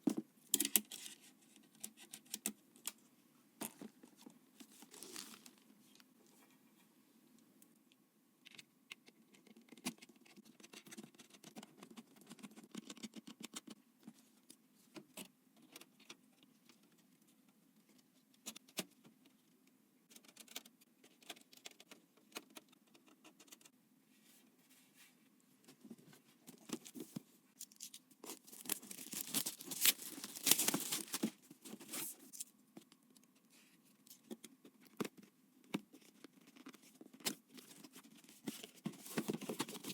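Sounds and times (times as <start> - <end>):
rustling of computer parts: 0.1 - 6.8, 20.1 - 39.9.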